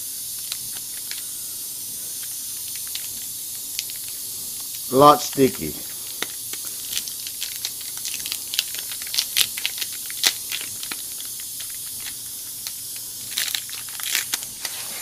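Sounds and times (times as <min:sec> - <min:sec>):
air hissing from tire: 0:00.0 - 0:15.0.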